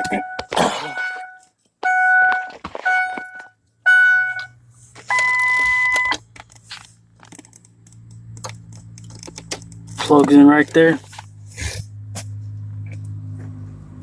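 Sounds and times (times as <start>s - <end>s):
high steady beep: 0.0s - 4.5s, 5.1s - 6.2s
dashboard warning chimes: 0.0s - 6.2s.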